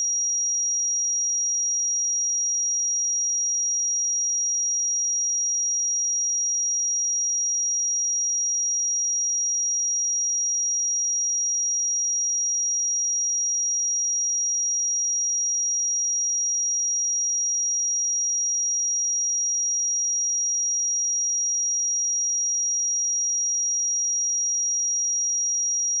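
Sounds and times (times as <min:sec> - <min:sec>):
high-pitched sine test tone: 0:00.0 - 0:02.9.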